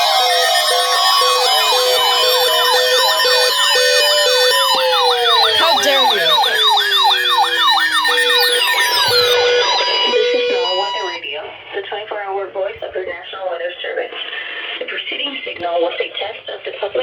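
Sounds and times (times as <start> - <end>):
on-off beep: 0.0 - 11.2
siren wail falling in pitch: 0.0 - 11.2
electronic siren yelp: 0.0 - 11.3.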